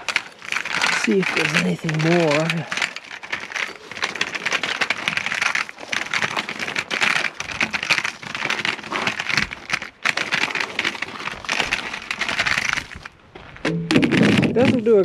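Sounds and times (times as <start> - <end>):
gravel crunching under wheels: 0.0 - 15.0.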